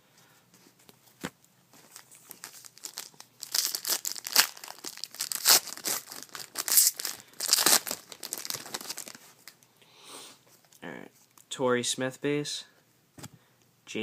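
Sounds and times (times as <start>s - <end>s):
foil wrapper tearing and crinkling: 2.3s - 9.6s.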